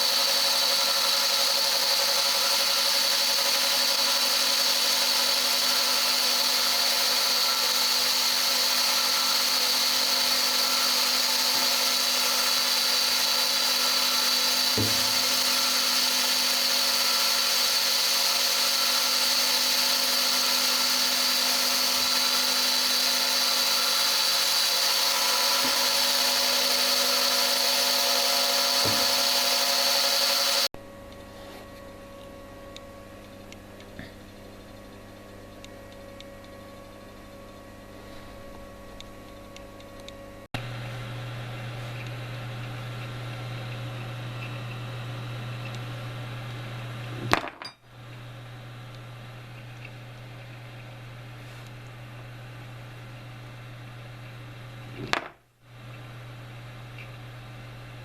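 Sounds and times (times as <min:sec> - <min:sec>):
milling machine whine: 0:00.0 - 0:30.7, 0:40.6 - 0:47.3.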